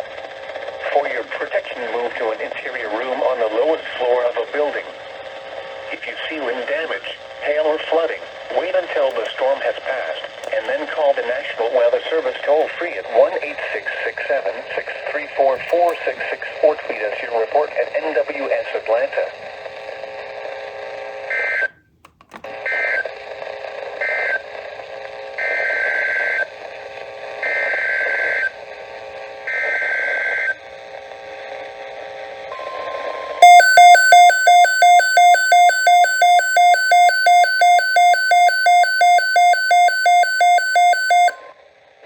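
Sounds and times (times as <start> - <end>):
loud pulsing alert beep: 33.4 - 41.4.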